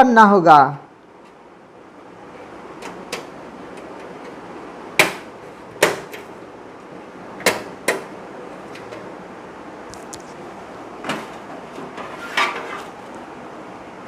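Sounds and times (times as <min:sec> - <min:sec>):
panel clicking into computer case: 0:02.8 - 0:04.4, 0:05.0 - 0:06.3, 0:07.4 - 0:09.1, 0:11.0 - 0:12.0.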